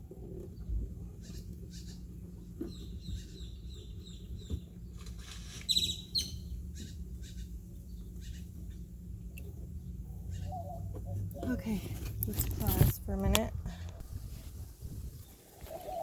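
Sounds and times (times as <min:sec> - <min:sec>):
low steady hum: 0:00.0 - 0:16.0
small bird chirping: 0:00.6 - 0:11.6.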